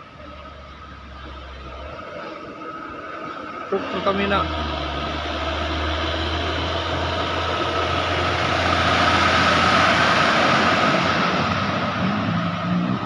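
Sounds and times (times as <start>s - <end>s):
truck engine passing: 0.0s - 13.0s.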